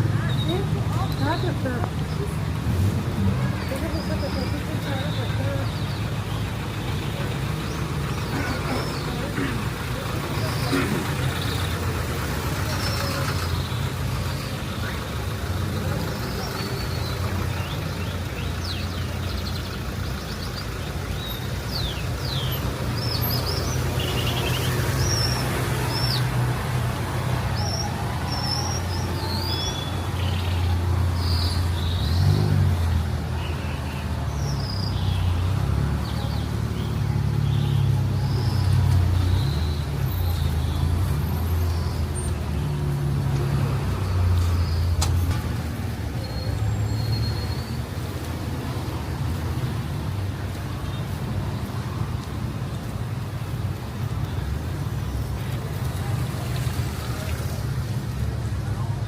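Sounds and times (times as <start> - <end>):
street traffic rumble: 0.0 - 59.0.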